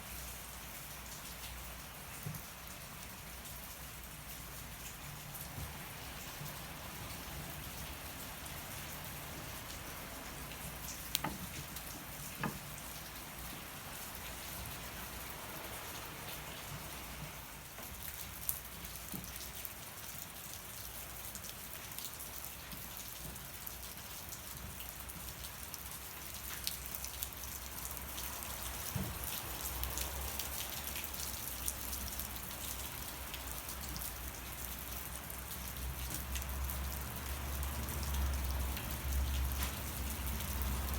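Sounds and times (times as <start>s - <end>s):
rain falling: 0.0s - 40.9s.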